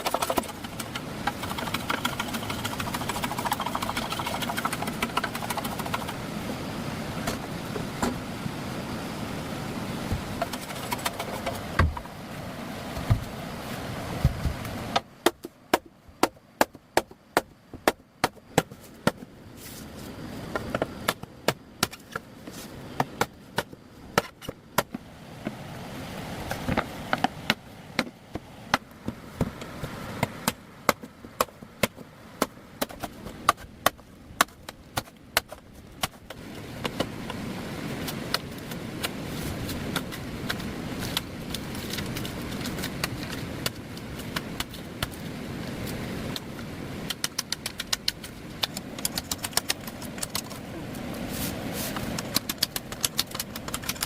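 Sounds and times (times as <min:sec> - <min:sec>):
wood being chopped: 0:14.2 - 0:19.2, 0:26.5 - 0:37.2.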